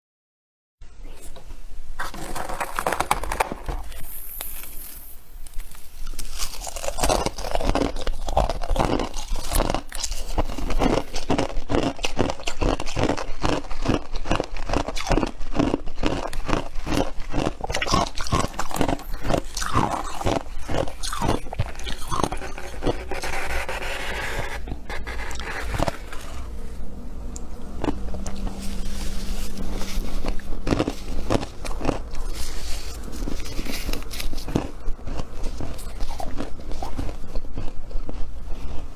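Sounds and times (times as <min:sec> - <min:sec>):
crunchy chewing: 0:02.0 - 0:38.9.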